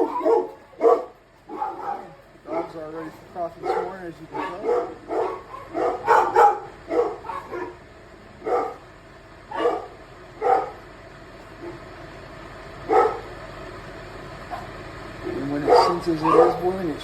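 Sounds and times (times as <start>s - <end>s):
dogs barking: 0.0s - 10.9s, 11.6s - 11.9s, 12.8s - 13.3s, 14.5s - 17.0s.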